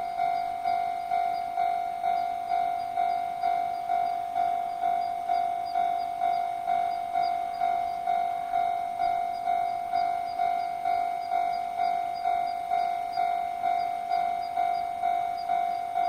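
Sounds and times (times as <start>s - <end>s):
level crossing warning bell: 0.0s - 16.0s.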